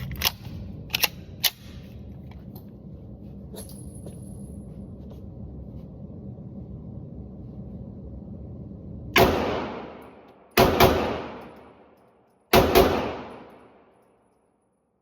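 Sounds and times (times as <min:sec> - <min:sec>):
low rumble: 0:00.0 - 0:12.0
pistol shots echoing: 0:10.6 - 0:11.6, 0:12.5 - 0:13.8.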